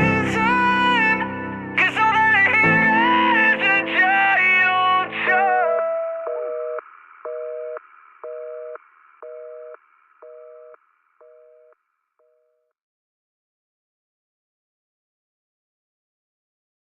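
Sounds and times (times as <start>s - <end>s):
song music: 0.0s - 6.8s
telephone busy signal: 6.3s - 12.6s.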